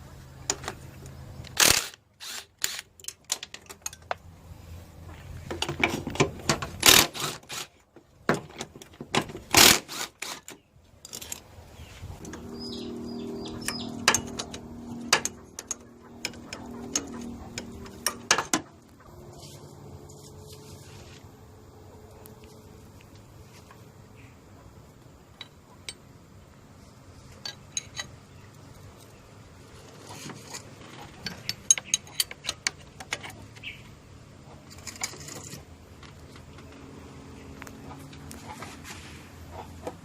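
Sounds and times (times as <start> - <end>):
tools and metal parts clinking: 1.5 - 4.2, 8.3 - 11.5, 12.2 - 19.0, 27.2 - 33.7, 34.6 - 36.8
steady hum: 12.0 - 27.5.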